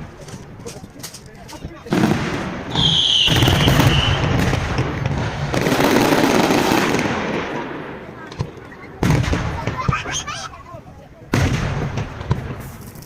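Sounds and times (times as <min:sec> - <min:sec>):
fireworks crackling barrage: 0:00.0 - 0:13.0
firework bang: 0:01.9 - 0:10.1, 0:11.3 - 0:13.0
firework whistle: 0:02.7 - 0:04.5.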